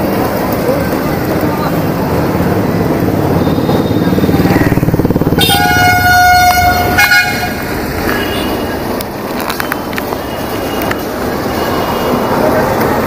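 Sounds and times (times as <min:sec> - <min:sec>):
scooter engine running: 0:00.0 - 0:10.2
vehicle horn blaring: 0:03.3 - 0:04.7, 0:05.4 - 0:08.8.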